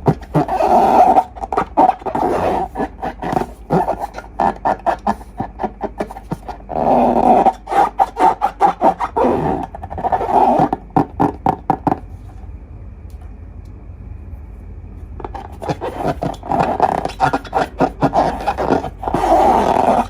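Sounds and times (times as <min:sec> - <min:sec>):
slime squelching: 0:00.0 - 0:11.4, 0:15.2 - 0:20.0.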